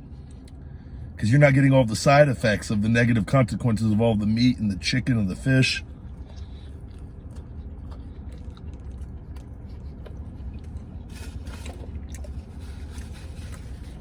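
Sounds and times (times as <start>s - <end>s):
steady low hum: 0.0s - 14.0s
crackly noises: 5.8s - 14.0s
person chewing food: 5.8s - 14.0s.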